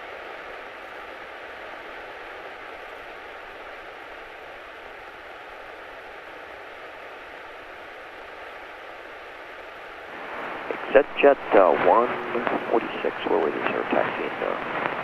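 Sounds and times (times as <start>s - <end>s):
faint steady whine: 0.0s - 15.0s
airplane cabin drone: 10.2s - 14.7s.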